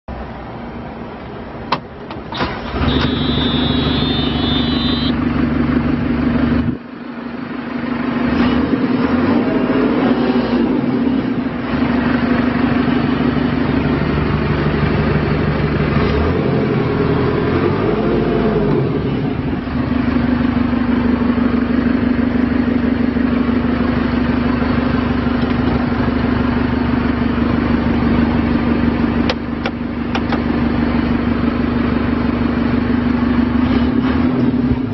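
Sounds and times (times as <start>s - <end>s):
diesel engine starting and running: 0.1s - 34.9s
high warning buzzer: 2.7s - 5.2s.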